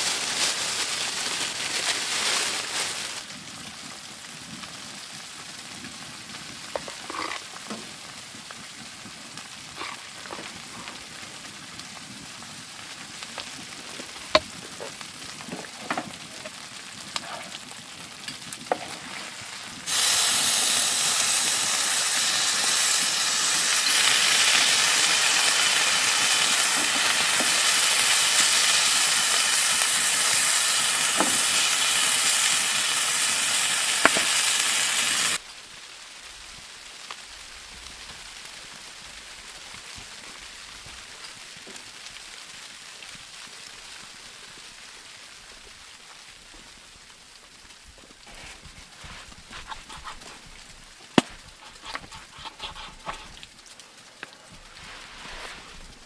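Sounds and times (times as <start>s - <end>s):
food sizzling in a pan: 6.4s - 37.2s, 48.3s - 56.0s
faint hiss: 18.7s - 56.0s.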